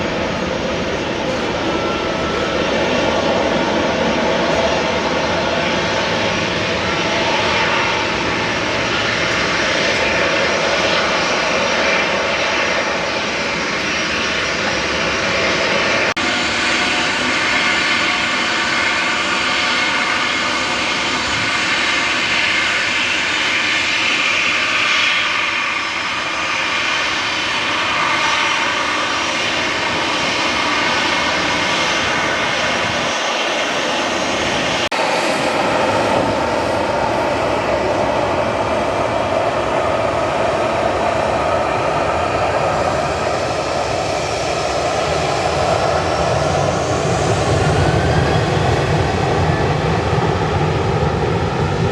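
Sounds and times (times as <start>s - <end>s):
jet engines running with whine: 0.0s - 51.9s.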